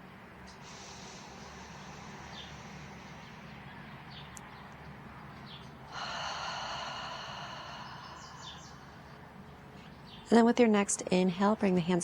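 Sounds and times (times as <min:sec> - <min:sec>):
person breathing out: 0:00.6 - 0:03.5, 0:05.9 - 0:09.0
faint bird chirps: 0:07.4 - 0:10.3.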